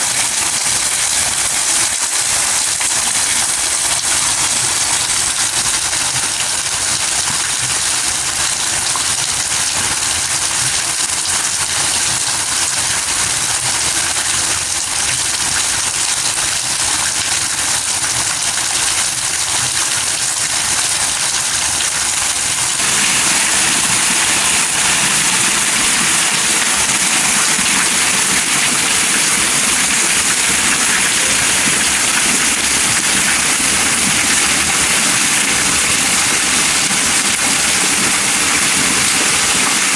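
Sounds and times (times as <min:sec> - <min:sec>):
steady rain hiss: 0:21.0 - 0:39.9.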